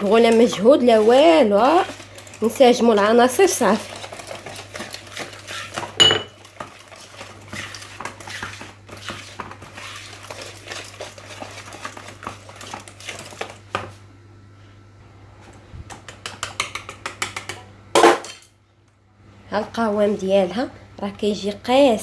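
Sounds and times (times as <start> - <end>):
utensil scraping in a bowl: 0.0 - 13.5
utensil clinking on bowl: 6.0 - 6.4.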